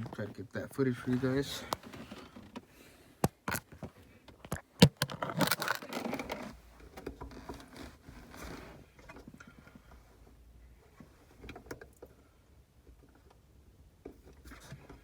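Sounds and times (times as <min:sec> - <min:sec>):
plastic scraping and rustling: 0:00.0 - 0:09.3
hard plastic clicking: 0:03.2 - 0:07.6.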